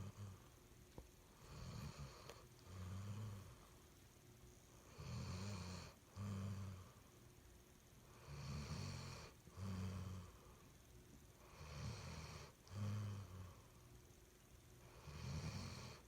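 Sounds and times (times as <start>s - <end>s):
pet snoring: 0.0s - 0.5s, 1.4s - 3.6s, 4.8s - 7.0s, 8.1s - 10.6s, 11.4s - 13.7s, 14.8s - 16.0s.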